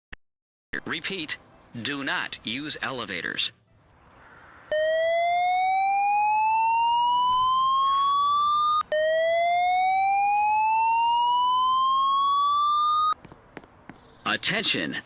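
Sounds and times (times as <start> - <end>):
slow-whoop evacuation tone: 4.7 - 13.2.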